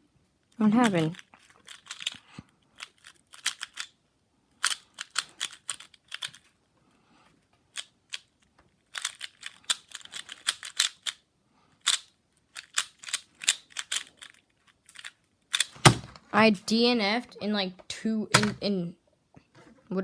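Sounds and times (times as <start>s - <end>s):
puzzle cube plastic clicks: 0.7s - 4.0s, 4.6s - 6.5s, 7.7s - 11.2s, 11.8s - 16.2s, 18.4s - 18.7s.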